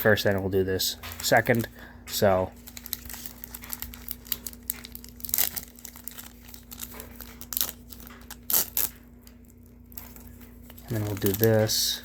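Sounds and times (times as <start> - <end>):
wrapper tearing and crinkling: 2.5 - 12.0.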